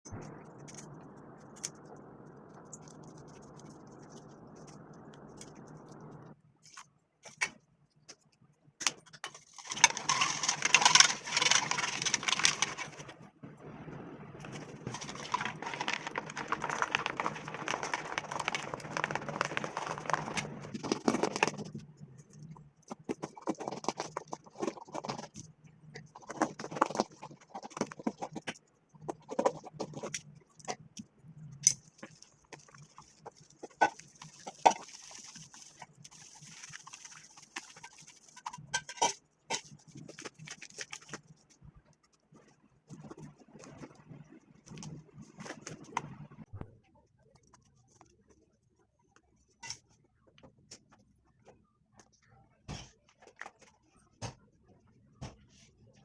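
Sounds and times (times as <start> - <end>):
slime scraping and rustling: 9.3 - 13.3, 14.4 - 25.4, 31.5 - 41.6.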